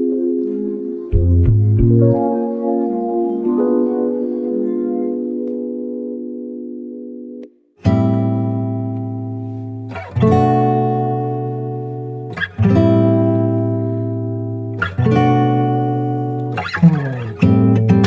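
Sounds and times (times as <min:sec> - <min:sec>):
guitar chords strummed: 0:00.0 - 0:18.0.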